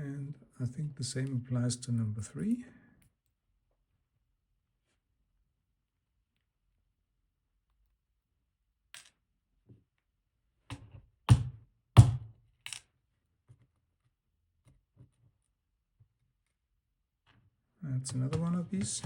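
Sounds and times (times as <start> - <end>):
metal parts clicking and knocking: 12.6 - 12.9.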